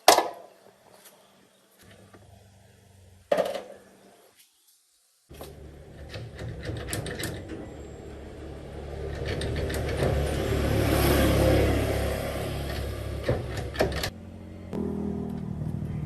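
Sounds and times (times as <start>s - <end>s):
engine running: 5.3s - 16.0s.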